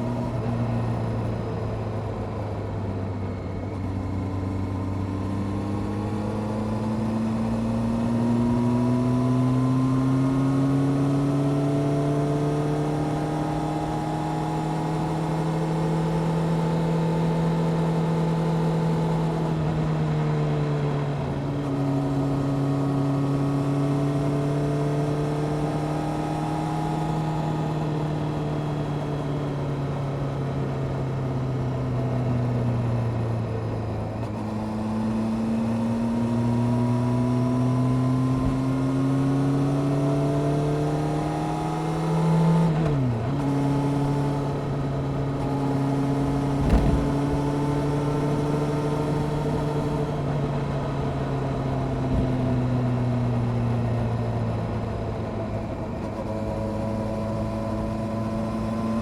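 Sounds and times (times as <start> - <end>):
motorcycle engine: 32.8 - 59.0.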